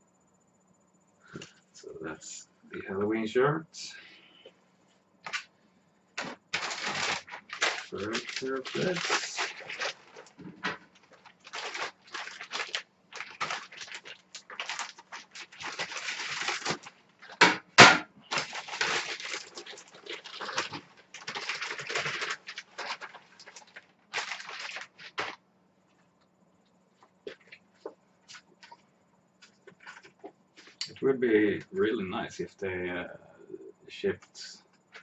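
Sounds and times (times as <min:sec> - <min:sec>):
plastic bag rustling and crinkling: 0:05.2 - 0:05.5, 0:06.2 - 0:25.4, 0:27.0 - 0:28.8, 0:29.4 - 0:30.9.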